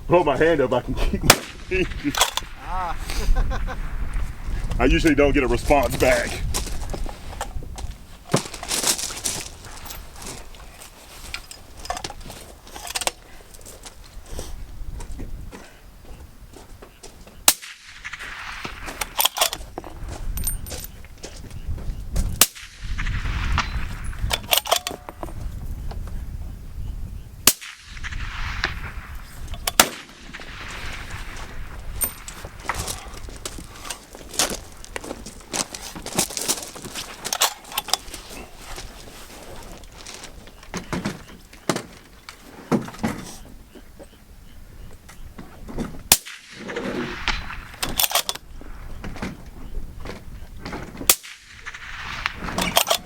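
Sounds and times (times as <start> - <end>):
suppressed rifle shots: 1.3 - 2.6, 27.4 - 32.1
sharp metallic clicks: 23.6 - 25.3, 29.4 - 31.0.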